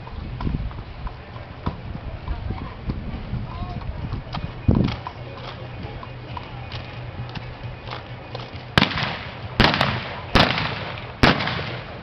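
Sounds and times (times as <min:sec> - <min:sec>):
gunshots: 0:08.8 - 0:12.0.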